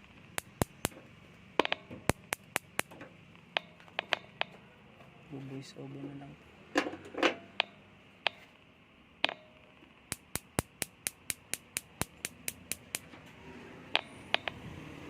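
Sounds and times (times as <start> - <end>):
sharp clicks: 0.0 - 4.6, 7.6 - 8.4, 9.2 - 13.1, 13.9 - 14.6.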